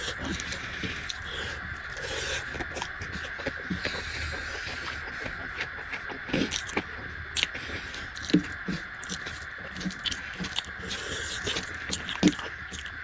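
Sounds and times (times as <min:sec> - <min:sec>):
chewing with wet mouth smacks: 0:00.0 - 0:13.0.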